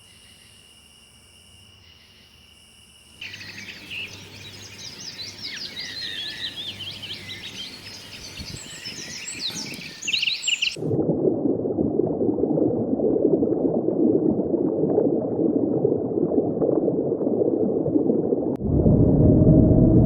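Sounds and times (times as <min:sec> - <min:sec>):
water bubbling and gurgling: 0:03.2 - 0:19.9
deep rumbling with low tone: 0:17.6 - 0:20.0.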